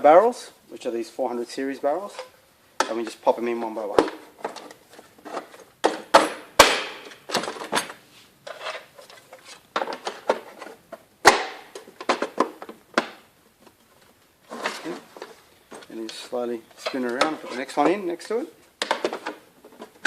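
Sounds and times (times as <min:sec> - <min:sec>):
plastic parts clacking: 0:03.8 - 0:06.4, 0:07.0 - 0:20.0.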